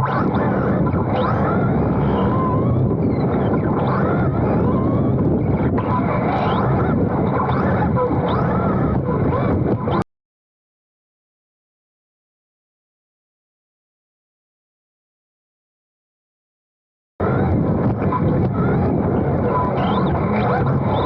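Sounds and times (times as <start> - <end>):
thin wavering whines: 0.0 - 10.0, 17.2 - 21.0
rc car rumble: 17.2 - 21.0.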